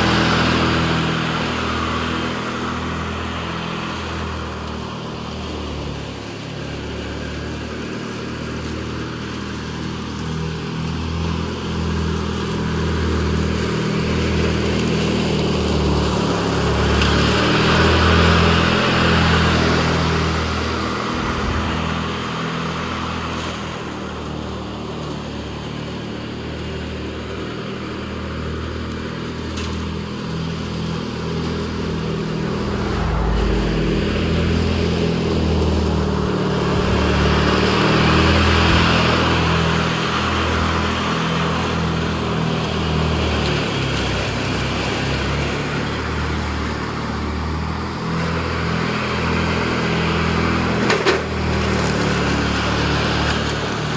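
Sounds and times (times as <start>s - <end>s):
riding lawn mower engine: 0.0s - 53.9s
broad rushing noise: 16.6s - 25.1s, 30.0s - 43.1s.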